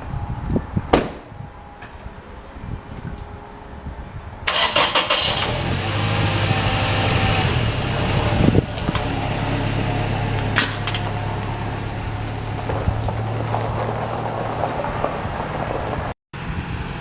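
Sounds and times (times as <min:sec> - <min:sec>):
vehicle engine starting and idling: 0:04.4 - 0:16.1.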